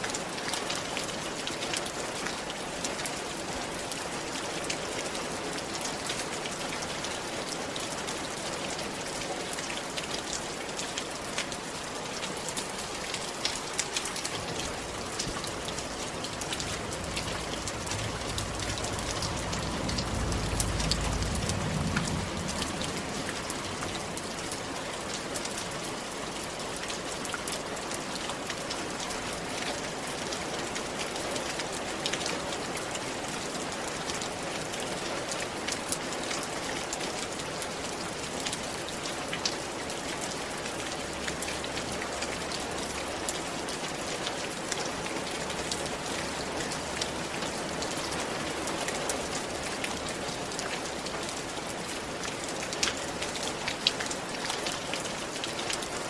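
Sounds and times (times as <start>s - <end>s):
rain pattering on a roof: 0.0s - 56.0s
low rumble: 16.0s - 24.2s.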